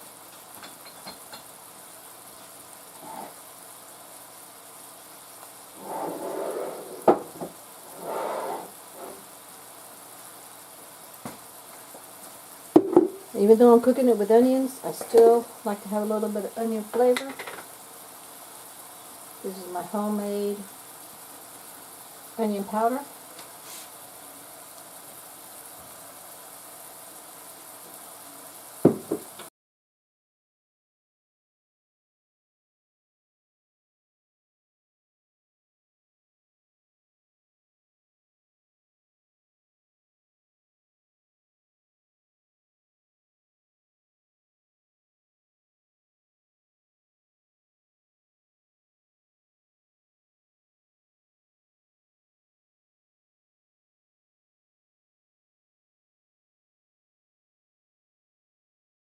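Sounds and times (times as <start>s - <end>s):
food sizzling in a skillet: 0.0s - 29.5s
scraping in a skillet: 2.4s - 3.5s, 5.7s - 9.5s, 23.4s - 24.1s
sharp knock: 12.8s - 13.2s, 28.9s - 29.2s.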